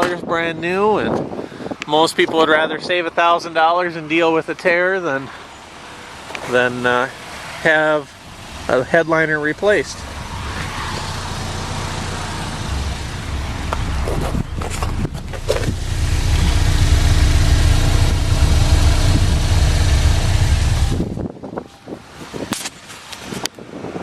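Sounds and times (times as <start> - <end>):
car engine idling: 5.7 - 21.2.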